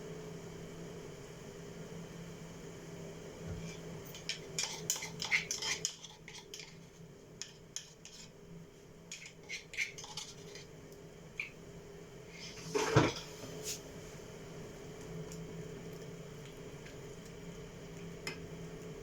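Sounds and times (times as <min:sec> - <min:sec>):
dishes clinking and clattering: 0:12.6 - 0:13.4.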